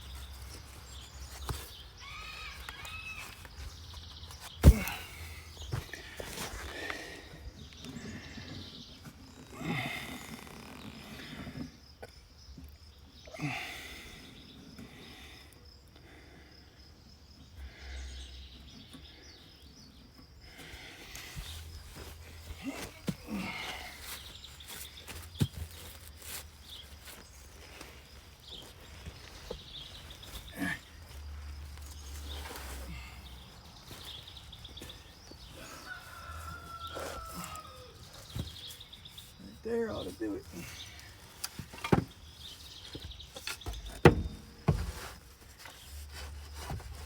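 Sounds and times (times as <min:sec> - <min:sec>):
rooster crowing: 0:35.6 - 0:38.1.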